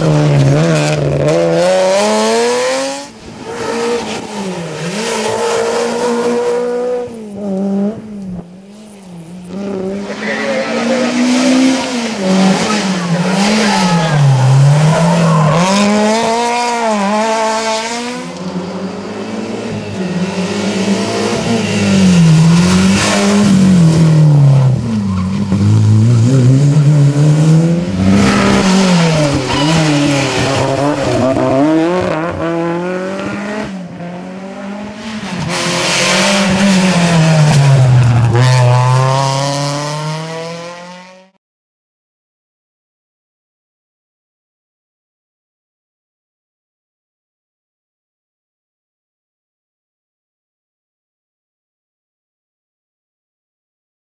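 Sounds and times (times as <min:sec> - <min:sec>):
rally car engines revving: 0:00.0 - 0:41.4.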